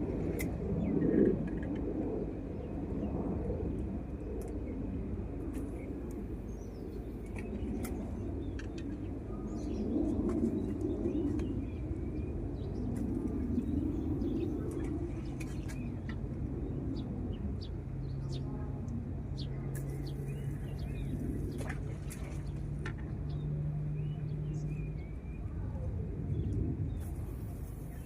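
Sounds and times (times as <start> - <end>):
low rumble: 0.0 - 28.0
small birds chirping: 19.3 - 28.0.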